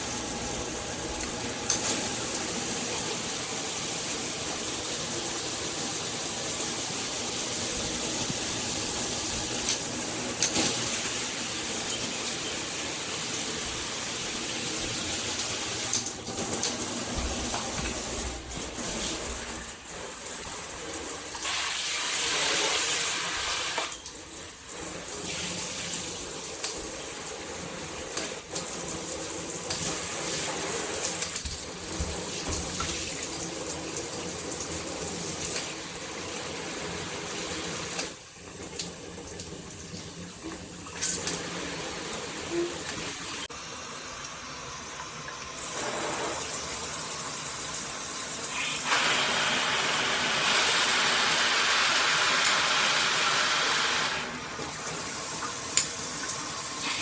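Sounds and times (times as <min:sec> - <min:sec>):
water spraying from shower head: 0:45.6 - 0:57.0.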